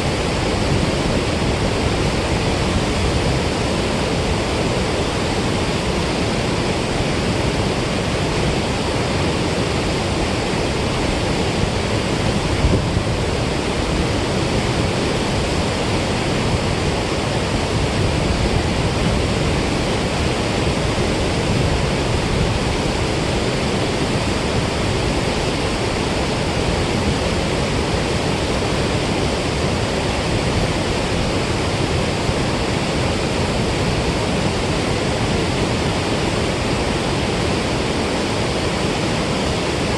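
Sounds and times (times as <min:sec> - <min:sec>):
water rushing from spillway: 0:00.0 - 0:39.9.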